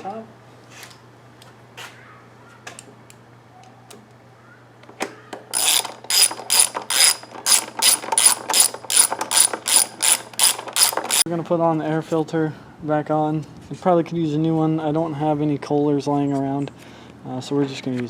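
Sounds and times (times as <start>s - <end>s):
ratchet wrench clicking: 5.5s - 11.2s.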